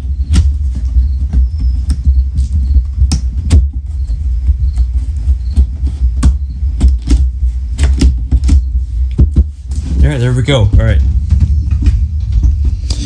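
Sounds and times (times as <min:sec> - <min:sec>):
low rumble: 0:09.8 - 0:13.0.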